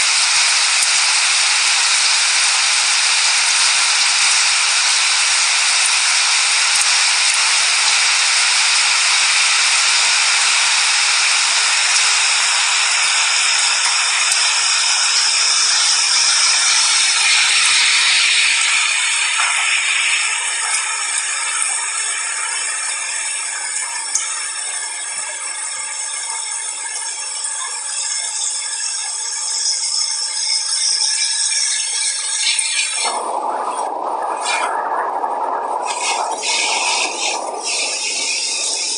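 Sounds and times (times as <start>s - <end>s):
heavy rainfall hiss: 35.8s - 38.9s.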